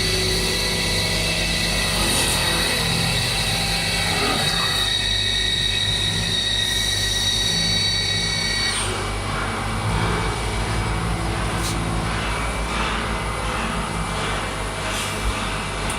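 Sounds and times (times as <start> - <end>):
milling machine whine: 0.0 - 15.9
low hum: 8.9 - 15.9.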